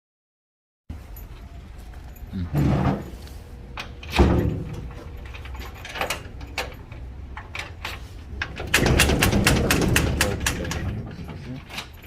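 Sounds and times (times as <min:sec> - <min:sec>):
metal latch and lock clicks: 0:03.8 - 0:12.0
door shutting with a knock: 0:08.6 - 0:10.7.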